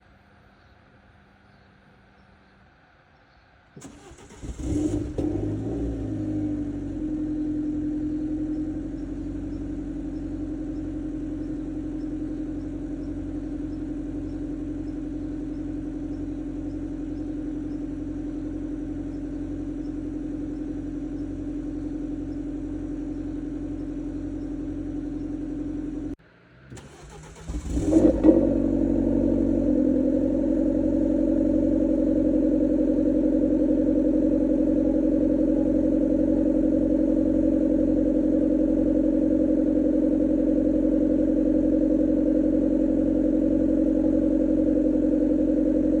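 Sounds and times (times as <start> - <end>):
starter motor cranking: 3.8 - 5.6, 26.7 - 28.4
car engine revving and idling: 3.8 - 46.0.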